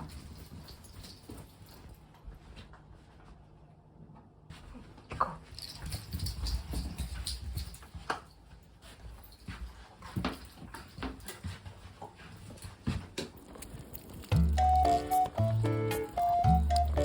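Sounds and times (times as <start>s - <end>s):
dogs tapping and rustling: 0.0s - 3.4s, 4.5s - 17.0s
background music: 14.2s - 17.0s.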